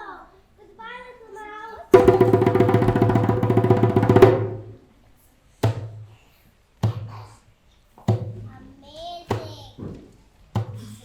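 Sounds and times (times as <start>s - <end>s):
low thumps: 2.0s - 4.8s
music with rapid drum strokes: 2.0s - 4.8s.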